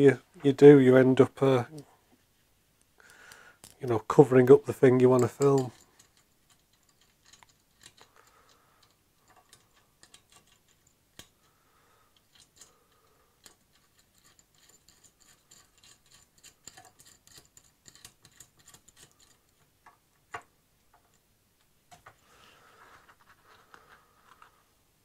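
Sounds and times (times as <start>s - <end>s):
small metal parts clicking: 3.6s - 3.9s, 5.0s - 11.5s, 12.1s - 21.3s.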